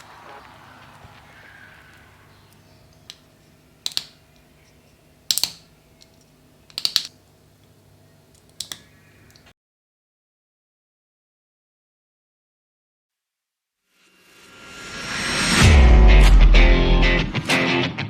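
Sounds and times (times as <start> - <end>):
plastic model parts clicking: 2.5 - 7.2, 8.3 - 9.5.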